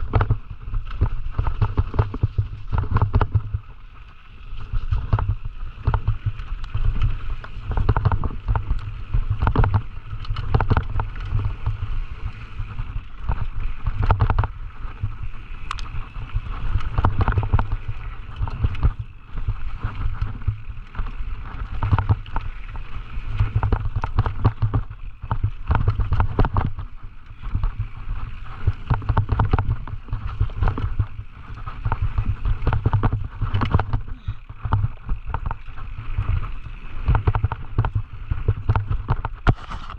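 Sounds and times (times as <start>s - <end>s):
mountain bike clattering on trail: 0.0s - 3.6s, 4.4s - 39.9s
steady rushing noise: 0.0s - 39.9s
wind rumbling on microphone: 0.0s - 39.9s.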